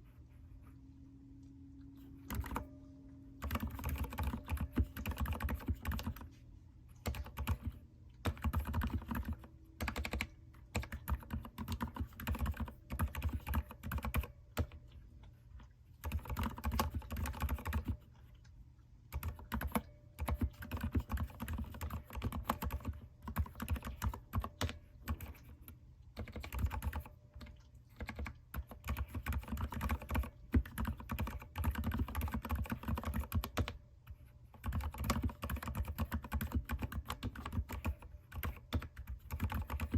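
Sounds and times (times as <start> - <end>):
mechanical keyboard typing: 2.3 - 2.7, 3.4 - 6.3, 7.0 - 14.8, 16.0 - 18.0, 19.1 - 25.5, 26.2 - 33.8, 34.6 - 39.9.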